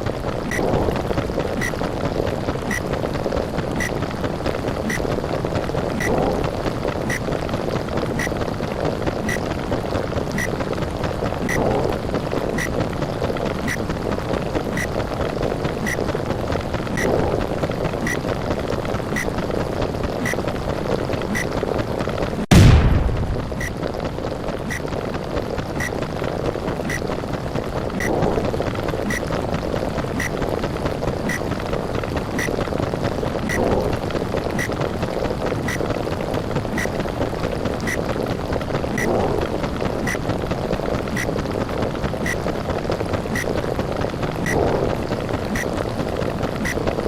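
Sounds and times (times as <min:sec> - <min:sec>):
muffled underwater water noise: 0:00.0 - 0:47.0
loud low burst: 0:22.5 - 0:23.8.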